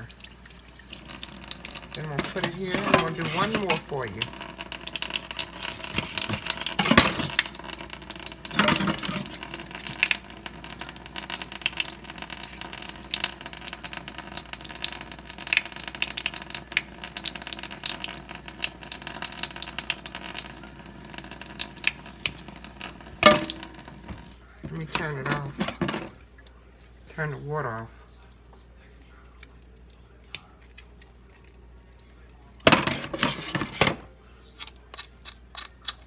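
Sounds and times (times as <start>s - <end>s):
kitchen tap running into sink: 0.0s - 26.2s, 32.6s - 34.1s
raw chicken being rinsed: 0.0s - 27.4s.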